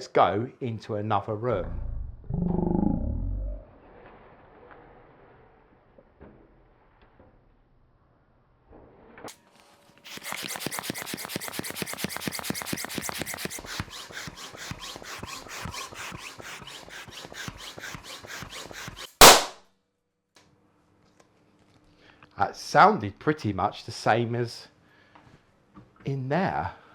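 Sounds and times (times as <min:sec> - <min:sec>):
balloon pump strokes: 0:10.0 - 0:19.5
balloon bursting pop: 0:19.2 - 0:19.6.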